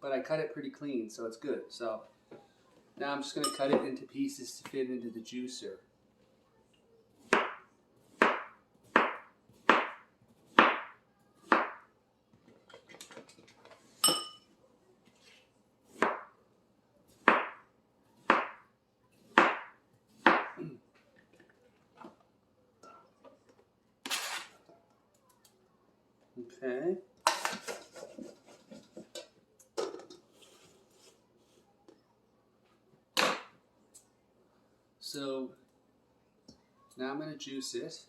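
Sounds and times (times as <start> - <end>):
knife chopping on cutting board: 7.2 - 11.8, 15.9 - 16.3, 17.2 - 17.6, 18.2 - 18.6.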